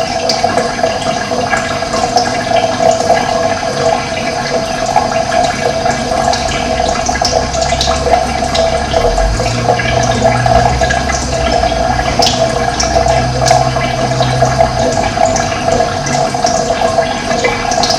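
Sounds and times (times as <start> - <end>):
running water: 0.0 - 17.9
low hum: 6.6 - 16.4.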